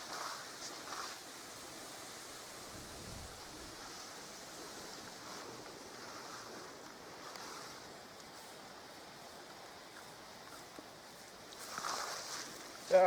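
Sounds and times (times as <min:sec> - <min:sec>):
rushing wind: 0:02.5 - 0:05.6
wind buffeting microphone: 0:02.6 - 0:03.8.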